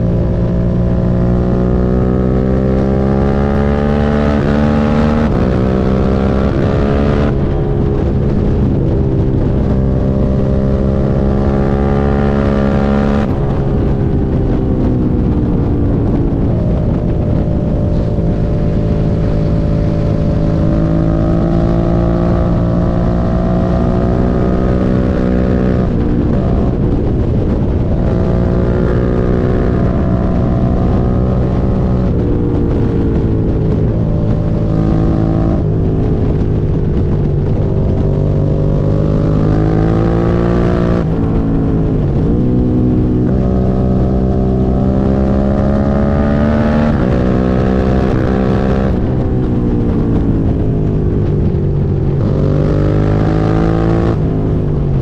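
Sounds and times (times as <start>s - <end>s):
motorcycle engine running: 0.0s - 55.0s.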